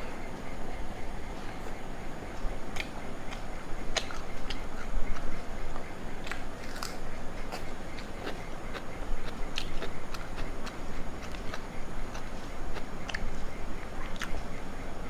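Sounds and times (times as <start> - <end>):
close chewing: 0.0 - 14.6
wet mouth clicks and smacks: 6.2 - 13.3.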